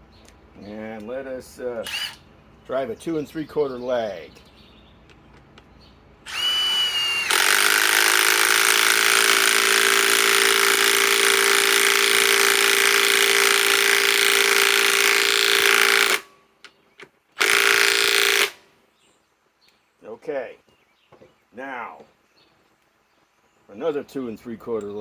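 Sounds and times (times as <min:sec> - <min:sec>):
impact wrench hammering: 0:06.3 - 0:16.3, 0:17.4 - 0:18.6.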